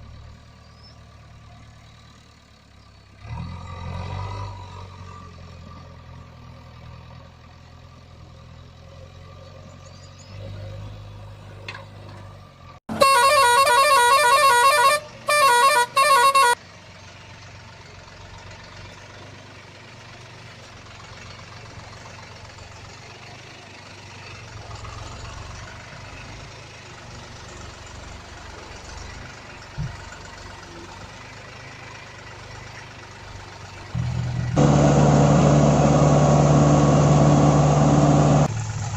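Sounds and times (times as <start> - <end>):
heavy engine running: 11.0 - 38.9
vehicle horn blasts: 12.9 - 16.6.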